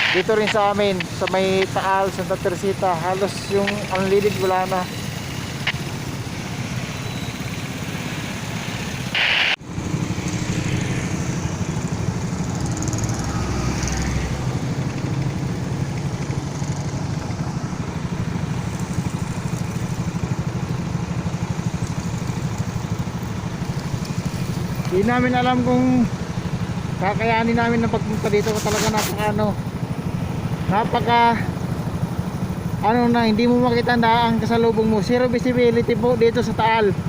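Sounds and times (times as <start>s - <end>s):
vehicle engine running: 0.0s - 37.0s
short loud hiss: 9.1s - 9.6s.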